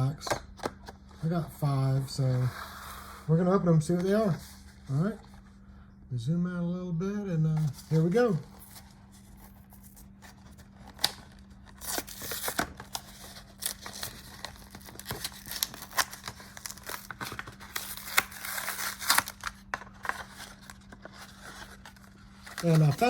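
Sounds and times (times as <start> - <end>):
packaging tearing and crinkling: 8.6 - 23.0.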